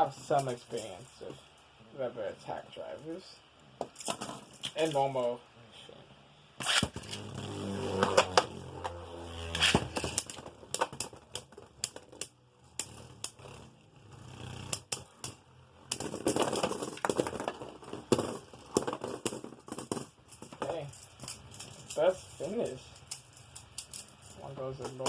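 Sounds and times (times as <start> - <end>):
spinning top humming: 6.7 - 16.4
spinning tops clacking together: 14.4 - 17.4, 19.2 - 25.0.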